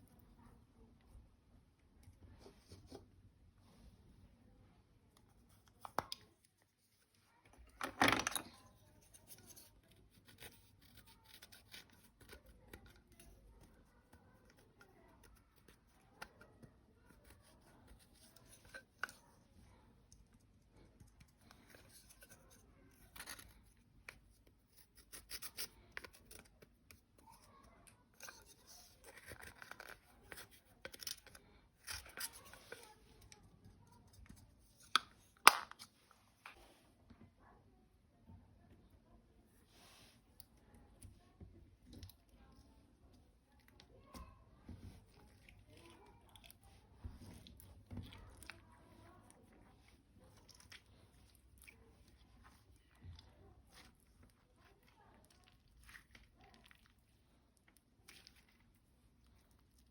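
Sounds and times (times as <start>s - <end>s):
slime handling clicks and rustles: 5.1s - 36.6s.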